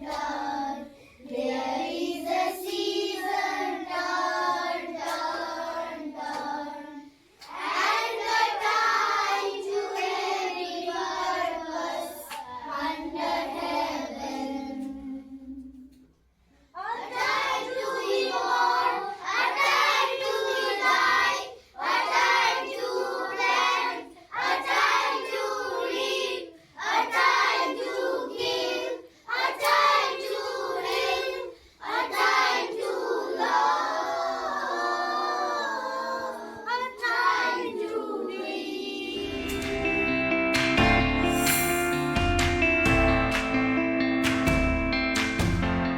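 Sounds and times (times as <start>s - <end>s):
children singing together: 0.0s - 16.0s, 16.8s - 40.2s
guitar music: 39.2s - 45.9s.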